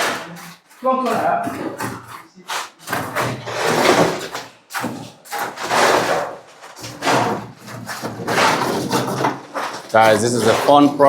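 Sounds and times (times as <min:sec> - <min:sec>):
wet concrete scraping: 0:00.0 - 0:11.0.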